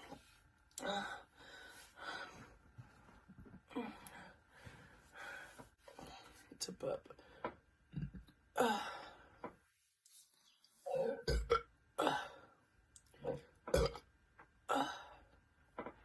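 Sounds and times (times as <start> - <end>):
person burping: 7.9 - 8.9, 10.8 - 12.4, 13.2 - 14.1.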